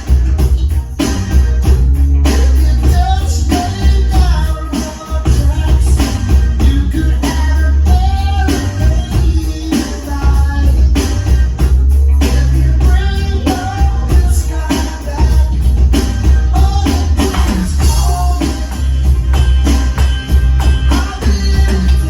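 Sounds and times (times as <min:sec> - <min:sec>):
drum kit playing: 0:00.0 - 0:22.0
pop-rock song with vocals: 0:00.0 - 0:22.0.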